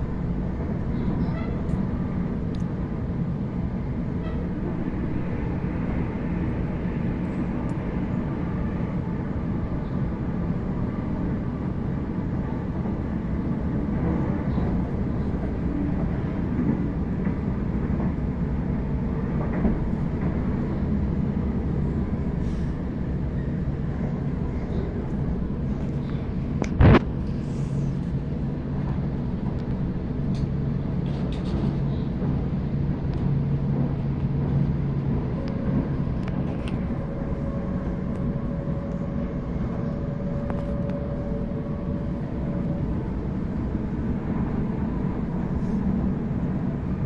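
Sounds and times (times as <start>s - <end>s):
train wheels rumbling on rail: 0.0s - 47.0s.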